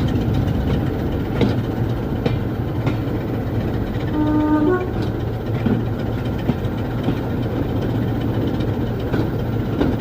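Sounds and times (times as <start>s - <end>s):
locomotive engine idling: 0.0s - 10.0s
locomotive horn: 4.0s - 5.1s.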